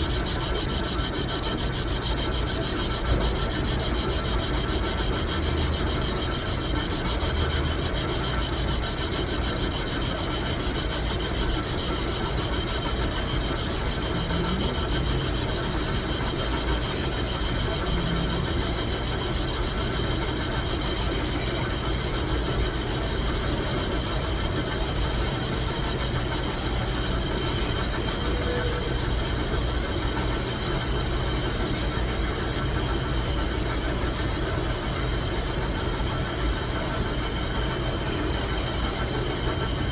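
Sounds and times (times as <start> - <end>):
machine whining tones: 0.0 - 39.9
metal lathe running: 0.0 - 39.9.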